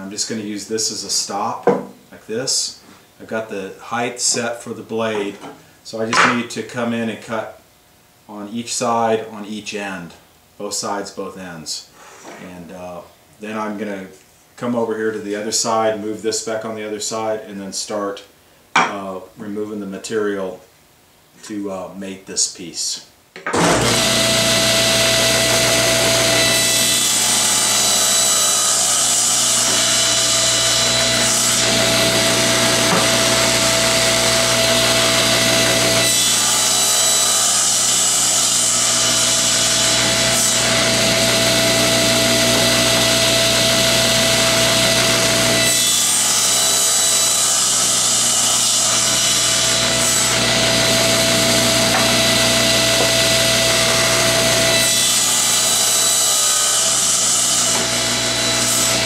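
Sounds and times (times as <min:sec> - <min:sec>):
table saw cutting wood: 0:05.1 - 0:06.4, 0:23.5 - 0:59.0.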